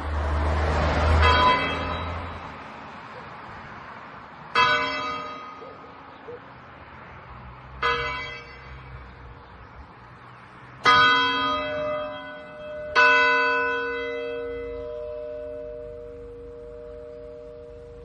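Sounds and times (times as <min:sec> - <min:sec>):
church bell ringing: 0:01.2 - 0:02.4, 0:04.5 - 0:05.8, 0:07.8 - 0:08.8, 0:10.8 - 0:18.0.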